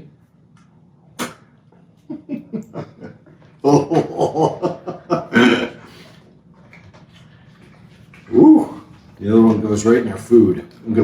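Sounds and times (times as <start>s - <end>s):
man laughing: 2.1s - 5.9s.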